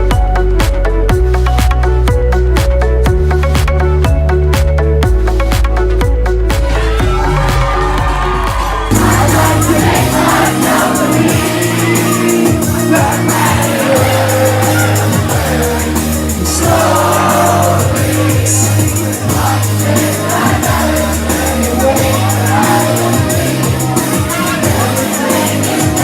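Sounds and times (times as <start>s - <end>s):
held bass notes: 0.0s - 26.0s
steady beat: 0.1s - 26.0s
person singing: 8.9s - 26.0s.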